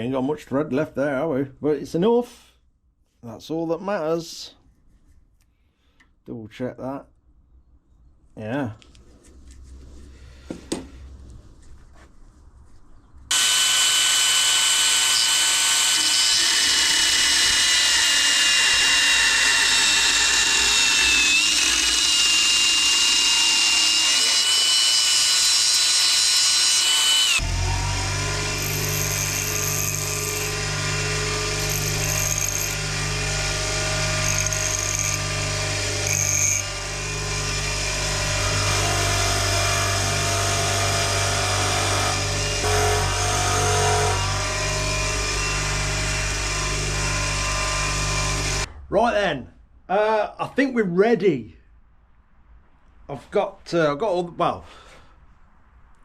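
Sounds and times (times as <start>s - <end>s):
power tool cutting bolts: 13.3s - 48.7s.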